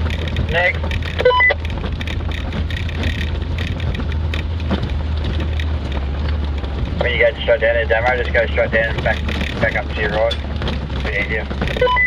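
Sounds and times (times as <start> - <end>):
engine humming in cabin: 0.0 - 12.0
vehicle knocks and rattles: 0.0 - 12.0.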